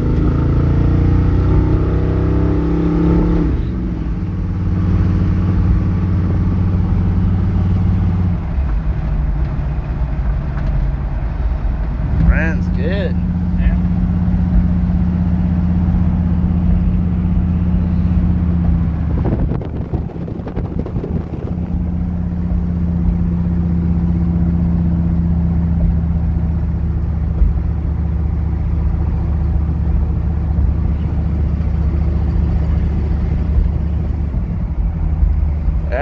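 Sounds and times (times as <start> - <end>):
vee eight engine running: 0.0 - 36.0.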